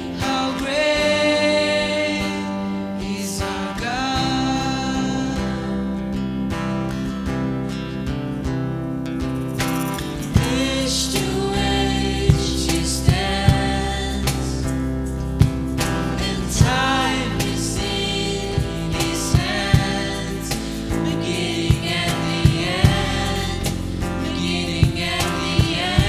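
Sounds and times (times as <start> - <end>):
people singing worship song: 0.0 - 6.0, 9.5 - 26.0
drum hits: 18.6 - 24.2.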